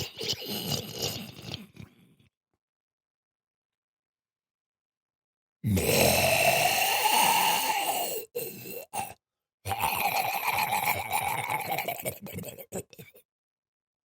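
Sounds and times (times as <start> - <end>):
monster groaning and growling: 5.7 - 13.0.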